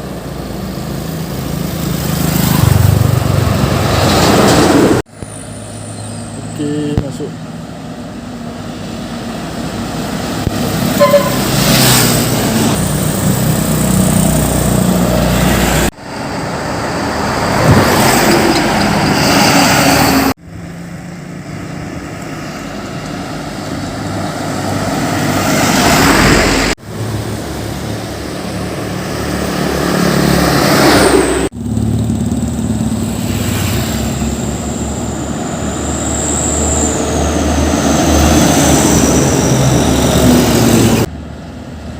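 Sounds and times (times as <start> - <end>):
diesel trucks driving past: 0.0 - 41.9.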